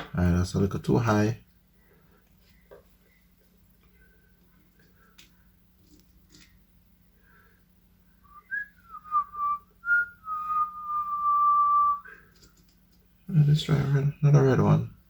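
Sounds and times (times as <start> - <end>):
person whistling: 8.2 - 12.2.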